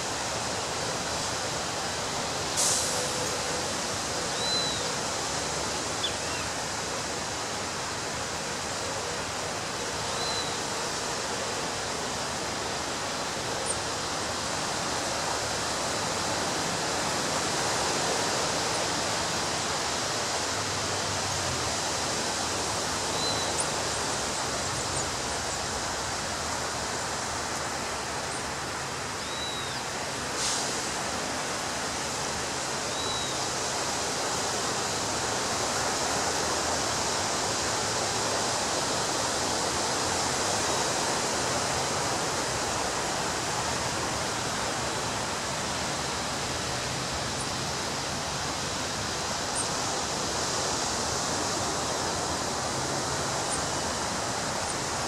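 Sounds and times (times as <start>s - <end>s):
faint high chirps: 29.2s - 29.8s.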